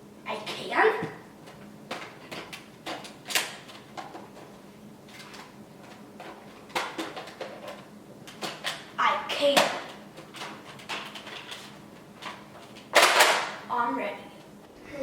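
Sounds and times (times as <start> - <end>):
plastic toy clicks and rattles: 9.6 - 13.5.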